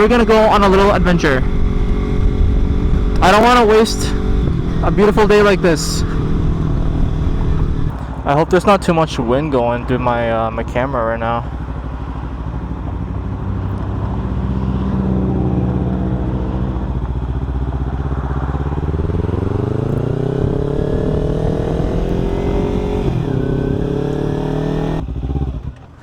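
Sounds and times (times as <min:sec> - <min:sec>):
motorcycle engine revving: 0:00.0 - 0:26.0
wind on microphone: 0:00.9 - 0:03.4, 0:06.0 - 0:08.0.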